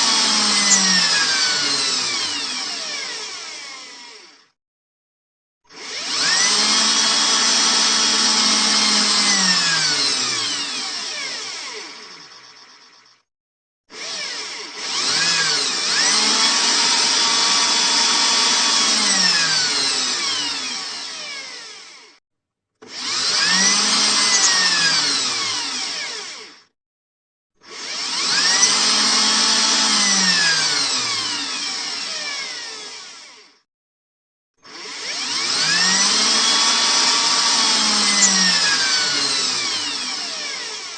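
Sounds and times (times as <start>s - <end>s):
electric drill whining: 0.0s - 4.6s, 5.7s - 13.2s, 13.9s - 22.2s, 22.8s - 26.7s, 27.6s - 33.6s, 34.6s - 40.9s.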